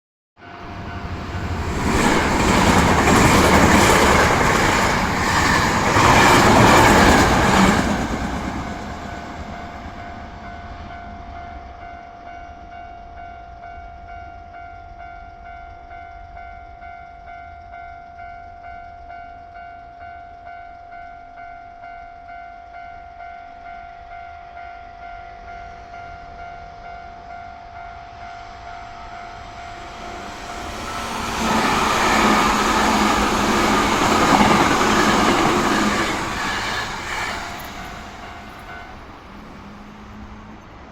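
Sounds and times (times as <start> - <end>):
train rumble: 0.4 - 12.8, 25.0 - 40.9
train wheels clacking on rail joints: 1.5 - 9.5, 30.0 - 39.0.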